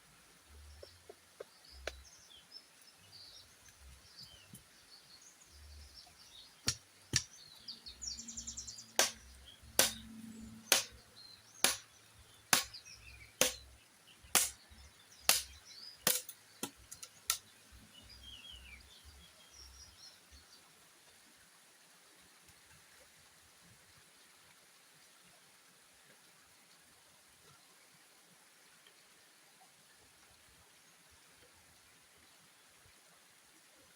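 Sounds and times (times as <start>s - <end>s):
faint birdsong: 0.0s - 22.4s
tool striking bamboo: 6.6s - 7.3s, 9.0s - 11.0s, 11.6s - 11.9s, 12.5s - 12.8s, 13.4s - 13.7s, 14.3s - 14.6s, 15.2s - 17.4s.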